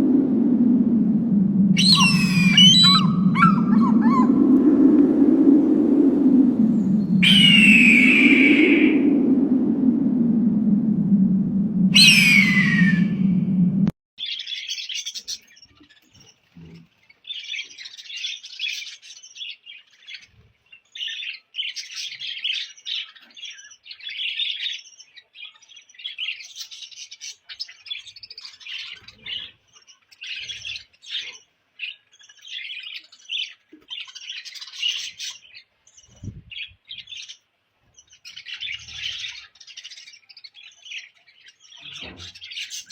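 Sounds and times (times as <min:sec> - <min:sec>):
birds chirping and squawking: 0:01.8 - 0:04.6, 0:07.0 - 0:08.8, 0:12.0 - 0:13.1, 0:21.0 - 0:42.9.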